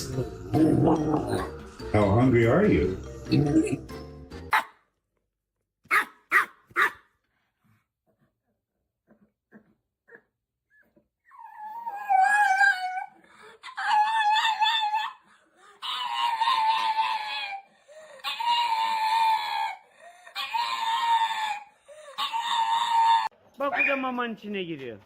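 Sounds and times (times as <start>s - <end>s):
dog howling: 11.3s - 23.3s.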